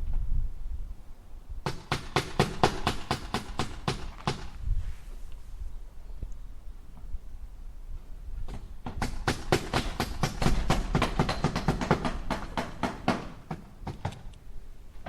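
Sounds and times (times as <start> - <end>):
hammer striking nails: 1.6 - 4.6, 8.5 - 14.3.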